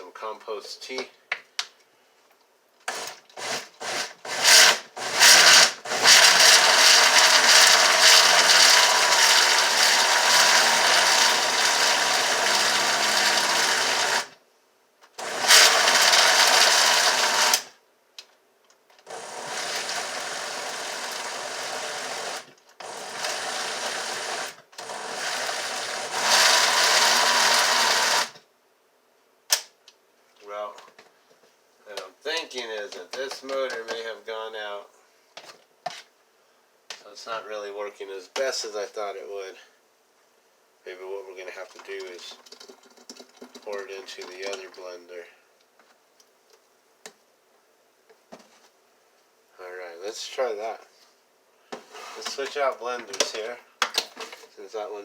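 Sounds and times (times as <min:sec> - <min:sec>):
blender motor chopping: 0:02.9 - 0:14.4, 0:15.2 - 0:17.7, 0:19.1 - 0:28.4.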